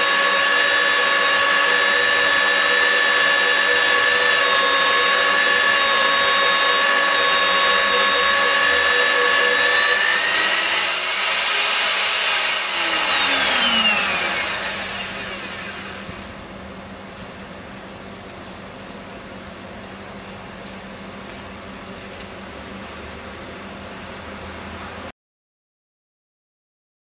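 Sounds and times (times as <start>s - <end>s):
drill motor whining: 0.0s - 16.4s.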